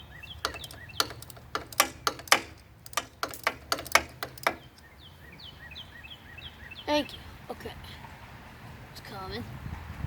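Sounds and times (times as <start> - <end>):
hand tool clicking on bolts: 0.4 - 4.8.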